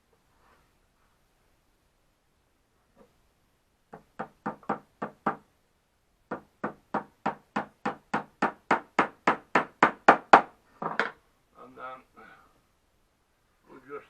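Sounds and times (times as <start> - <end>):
hammer driving nails into wood: 6.3 - 11.1.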